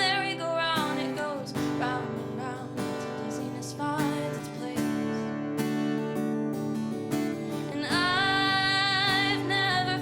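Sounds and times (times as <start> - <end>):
acoustic guitar strumming chords: 0.0 - 10.0.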